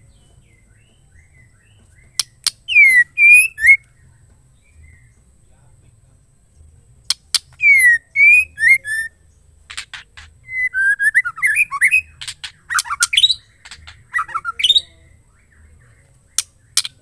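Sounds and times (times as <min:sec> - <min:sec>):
bird singing whistled notes: 0:00.0 - 0:05.4, 0:07.1 - 0:17.0
bird clicking chips: 0:02.2 - 0:03.8, 0:07.1 - 0:09.1, 0:09.7 - 0:14.8, 0:16.3 - 0:17.0.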